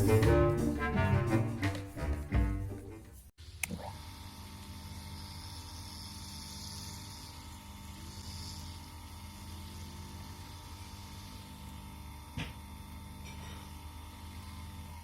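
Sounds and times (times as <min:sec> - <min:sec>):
electric motor humming and whining: 0:03.9 - 0:15.0.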